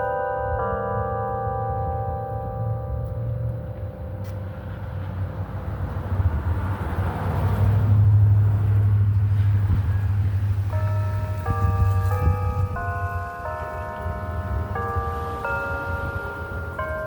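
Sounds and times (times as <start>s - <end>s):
church bells ringing a tune: 0.0s - 5.5s, 9.1s - 17.0s
vehicle passing with low rumble: 0.9s - 17.0s.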